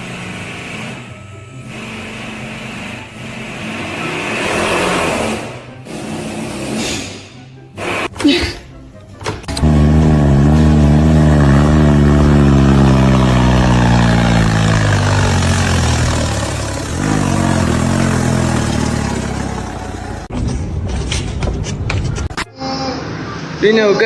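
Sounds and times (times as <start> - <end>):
vehicle engine running: 0.0 - 6.8, 9.5 - 20.3.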